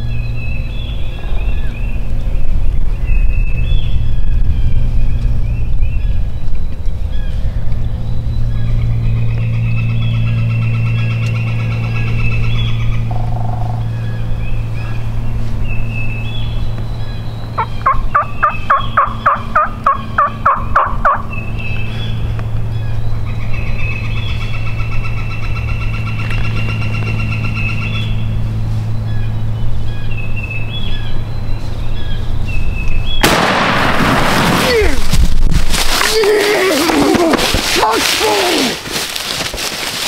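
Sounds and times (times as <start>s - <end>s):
steady low hum: 0.0s - 40.0s
wild turkey yelping: 13.1s - 13.8s, 17.6s - 21.3s.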